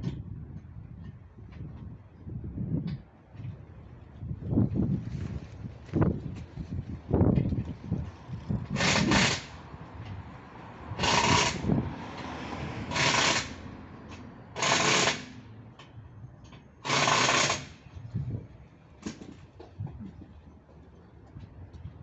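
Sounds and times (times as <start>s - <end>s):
impact wrench hammering: 8.8s - 9.5s, 14.6s - 15.4s, 16.8s - 17.7s.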